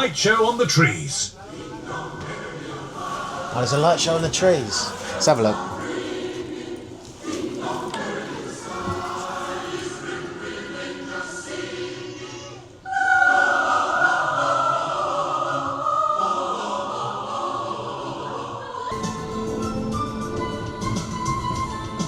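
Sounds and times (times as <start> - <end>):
choir singing: 0.0 - 22.0
orchestral music with percussion: 18.9 - 22.0.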